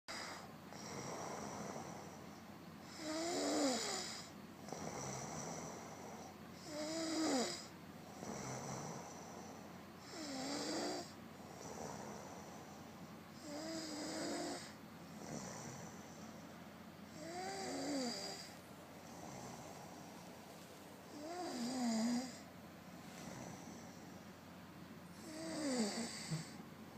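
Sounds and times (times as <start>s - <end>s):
loud snoring with squeak: 2.9s - 5.8s, 6.6s - 9.0s, 10.0s - 12.2s, 13.4s - 15.9s, 17.1s - 18.5s, 21.1s - 22.4s, 25.2s - 26.5s
soft breathing: 8.0s - 10.4s, 11.0s - 26.7s.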